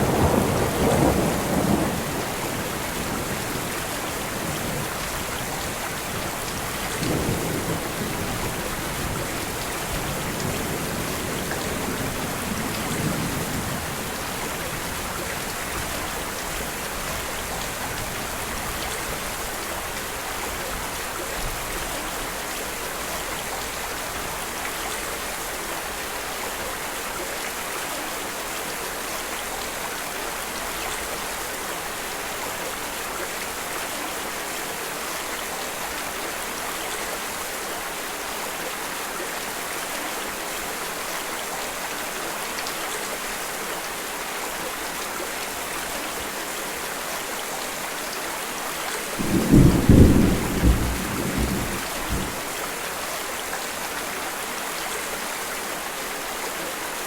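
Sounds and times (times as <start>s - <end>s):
low rolls of thunder: 0.0s - 3.4s, 49.2s - 52.5s
steady rain: 0.0s - 57.0s.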